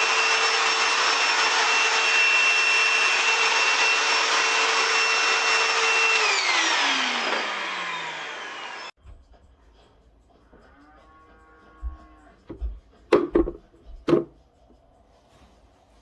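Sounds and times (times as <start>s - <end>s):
vacuum motor spinning down: 0.0s - 8.9s
vacuum cleaner running: 0.0s - 9.0s.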